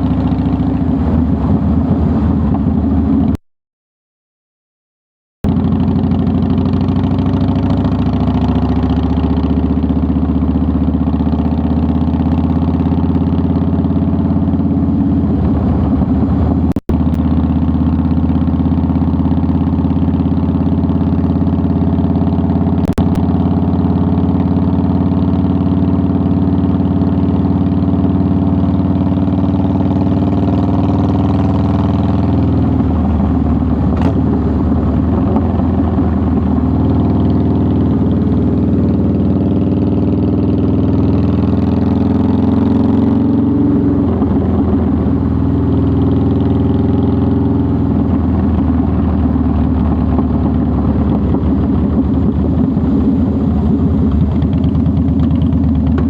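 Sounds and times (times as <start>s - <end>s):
motorcycle engine idling: 5.5s - 41.6s, 47.7s - 56.0s.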